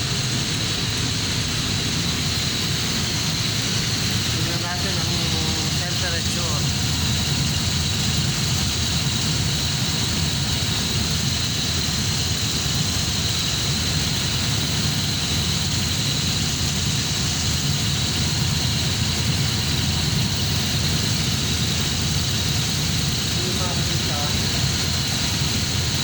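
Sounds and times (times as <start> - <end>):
chiller machine hum: 0.0 - 26.0.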